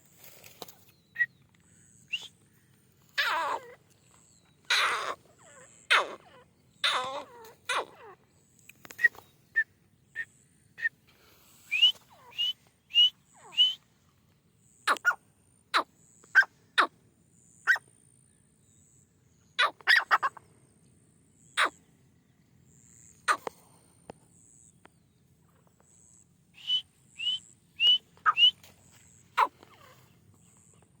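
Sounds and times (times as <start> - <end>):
partridges calling: 0.0 - 13.9, 17.5 - 17.9, 18.8 - 20.4, 21.4 - 21.9, 24.3 - 31.0.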